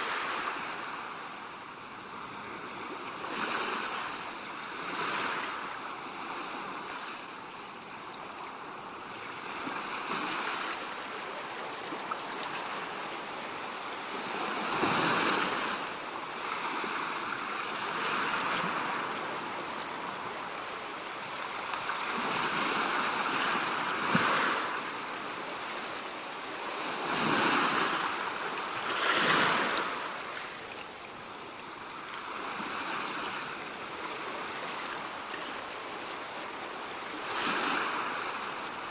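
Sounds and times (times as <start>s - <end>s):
ocean waves breaking: 0.0s - 7.5s, 8.4s - 38.9s.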